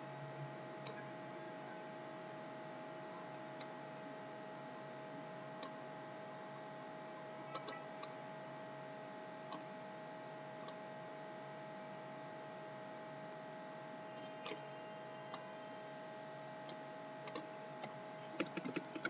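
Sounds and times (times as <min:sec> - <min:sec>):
faint electrical hum and hiss: 0:00.0 - 0:19.0
computer mouse clicking: 0:10.6 - 0:10.8, 0:17.3 - 0:19.0.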